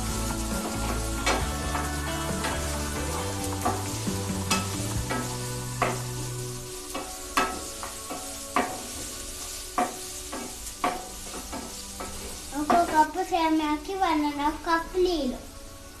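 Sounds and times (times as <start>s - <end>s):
food sizzling in oil: 0.0s - 16.0s
spoon knocking against pan: 6.9s - 8.9s, 9.8s - 12.1s.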